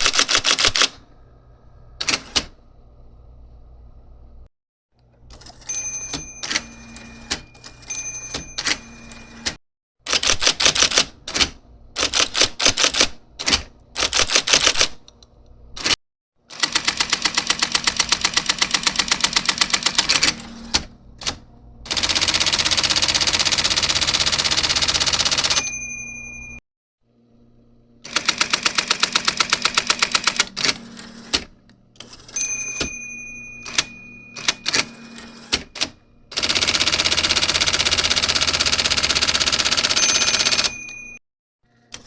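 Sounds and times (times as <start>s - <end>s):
typewriter keystrokes: 0.0s - 1.0s, 2.0s - 2.6s, 5.3s - 15.2s, 15.8s - 16.0s, 16.6s - 25.6s, 28.1s - 33.0s, 33.7s - 41.1s
typewriter motor humming: 0.0s - 1.0s, 2.0s - 2.6s, 8.6s - 15.1s, 15.8s - 25.6s, 28.0s - 32.4s, 33.7s - 40.9s.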